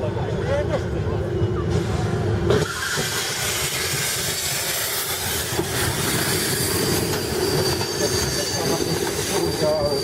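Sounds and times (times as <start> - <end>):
train wheels rumbling on rails: 0.0 - 10.0
high wheel squeal: 2.5 - 10.0.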